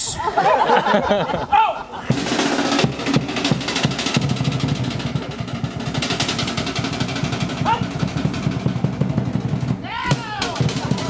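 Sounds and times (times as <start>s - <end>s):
person shouting: 1.5s - 1.8s, 7.6s - 7.9s, 9.8s - 10.7s
rapid drumming: 2.1s - 11.0s.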